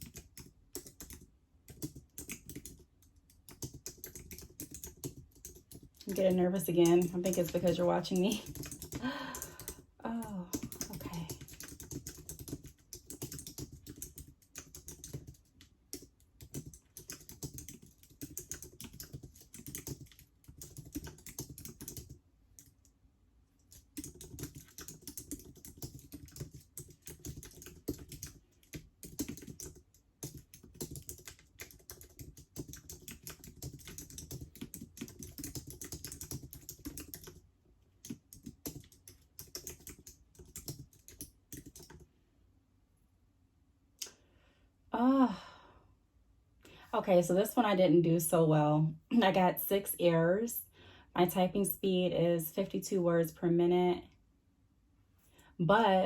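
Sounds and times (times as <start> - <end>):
fast typing on keyboard: 0.0 - 22.7, 23.6 - 42.1.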